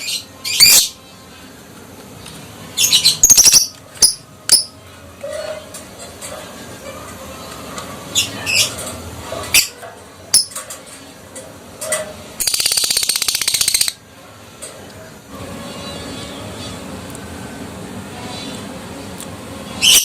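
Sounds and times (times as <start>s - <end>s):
lovebird chirping and trilling: 0.0s - 1.0s, 2.8s - 4.8s, 8.1s - 8.8s, 12.4s - 14.0s, 19.8s - 20.0s.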